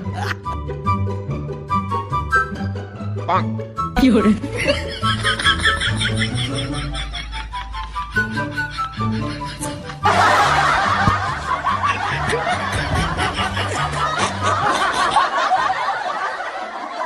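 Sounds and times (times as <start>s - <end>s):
background music: 0.0s - 16.2s
crowd laughing: 4.4s - 17.0s.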